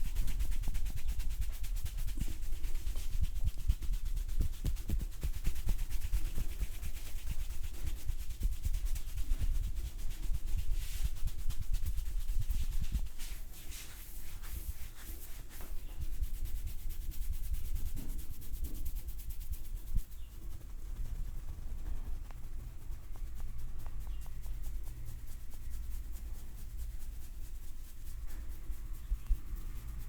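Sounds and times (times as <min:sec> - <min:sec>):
hands scratching through hair: 0:00.0 - 0:30.0
soft thuds of strokes: 0:00.0 - 0:30.0.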